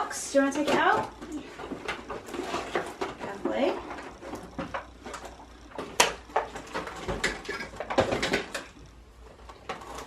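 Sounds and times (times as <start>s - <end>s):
cardboard and plastic rustling: 0.0s - 10.0s.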